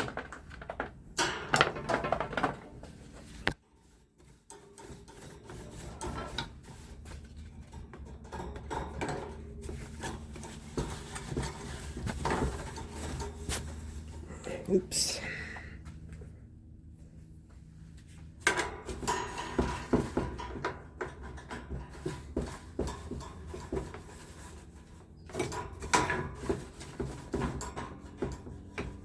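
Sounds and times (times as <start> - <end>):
fan parts being handled: 0.0 - 16.3, 17.9 - 29.0
low steady hum: 0.0 - 26.0.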